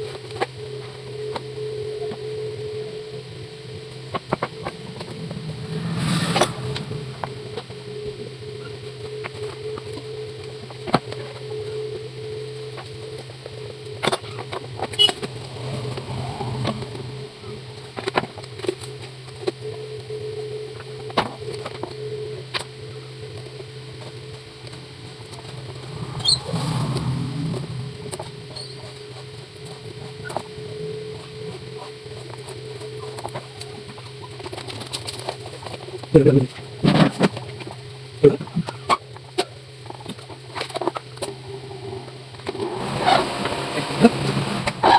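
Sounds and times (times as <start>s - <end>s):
electric fan motor humming: 0.0s - 44.9s.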